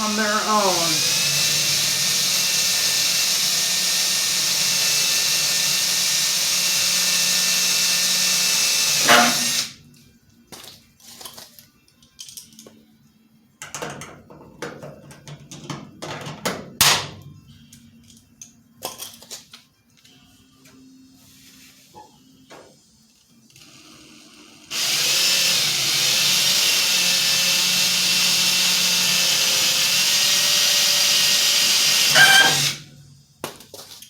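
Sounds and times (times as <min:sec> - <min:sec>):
electric drill drilling metal: 0:00.0 - 0:09.8, 0:23.6 - 0:32.9
parts being handled clicking: 0:11.2 - 0:12.8.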